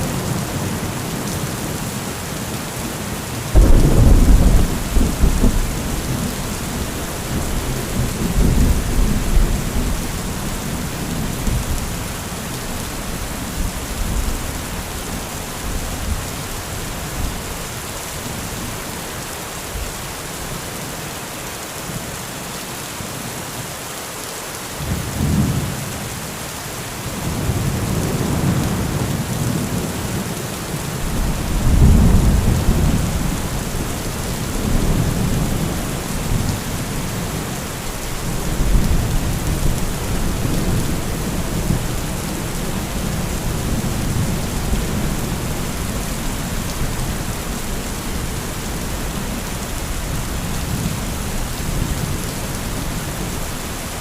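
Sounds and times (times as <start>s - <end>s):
heavy rain falling: 0.0s - 54.0s
rolling thunder: 3.5s - 12.1s, 31.0s - 47.2s.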